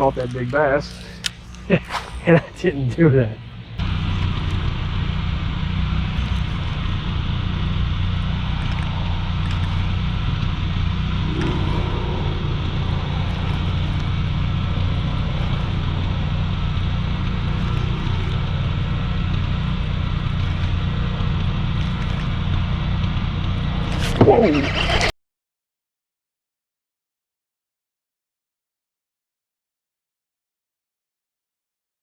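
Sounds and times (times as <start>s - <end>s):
small motor humming: 0.0s - 25.1s.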